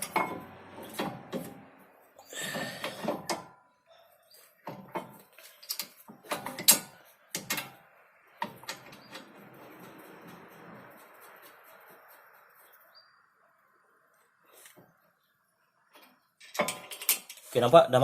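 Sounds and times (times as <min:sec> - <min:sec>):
brake parts clicking and knocking: 0:00.0 - 0:01.8, 0:02.4 - 0:03.6, 0:04.6 - 0:12.1.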